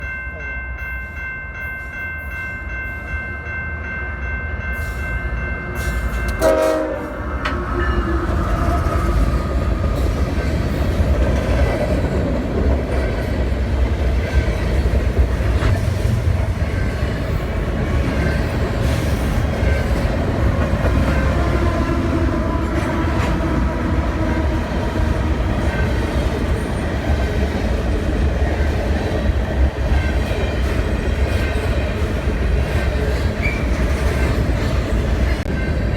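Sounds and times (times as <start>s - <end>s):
train engines rumbling: 0.0s - 35.9s
train air horn: 6.4s - 9.4s.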